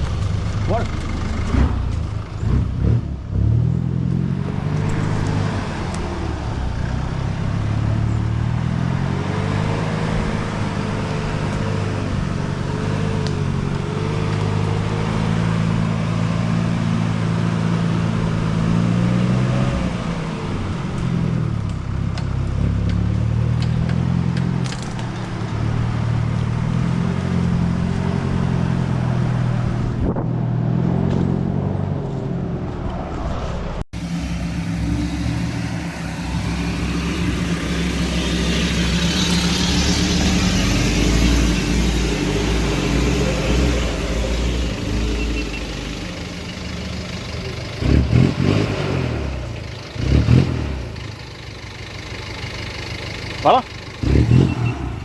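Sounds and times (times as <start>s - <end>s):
diesel engine revving: 0.0s - 55.0s
rushing noise: 33.1s - 49.6s.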